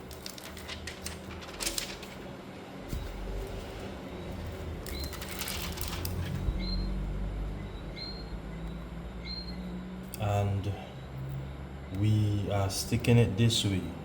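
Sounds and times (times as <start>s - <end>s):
plastic film crackling: 0.0s - 2.3s, 4.5s - 6.3s
low steady hum: 0.0s - 14.0s.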